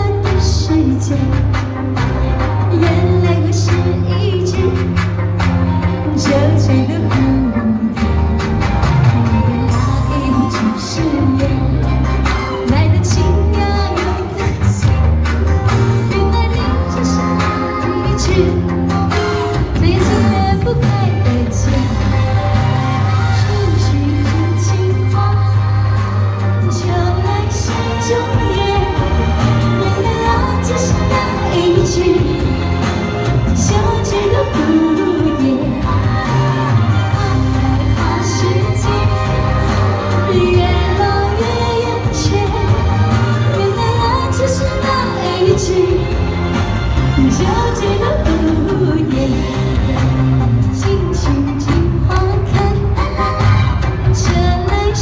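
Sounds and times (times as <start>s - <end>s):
pop song with steady beat: 0.0s - 55.0s.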